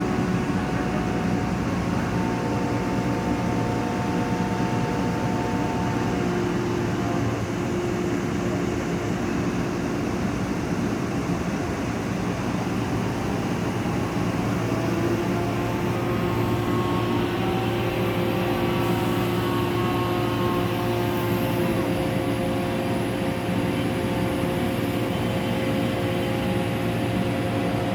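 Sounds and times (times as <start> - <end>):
crane engine running: 0.0 - 27.9.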